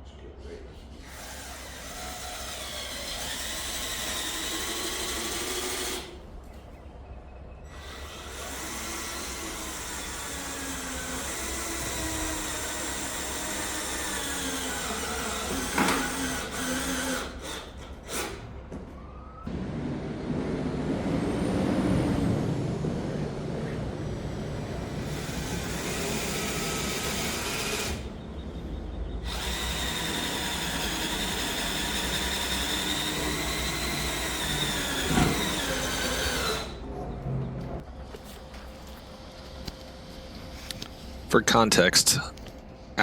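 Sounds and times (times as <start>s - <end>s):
drill driving screws: 1.0s - 6.2s, 7.7s - 18.5s, 25.0s - 28.1s, 29.3s - 36.8s.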